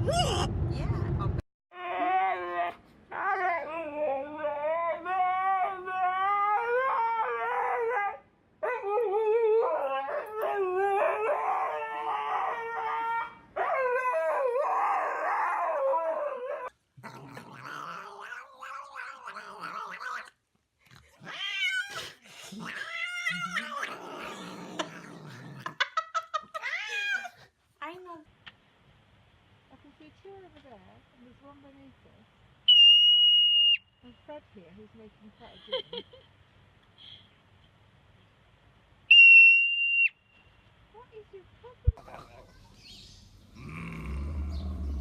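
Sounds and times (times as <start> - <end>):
pet animal yowling: 17.3 - 20.3, 21.2 - 25.4, 26.5 - 27.4
rough animal noises: 42.0 - 45.0.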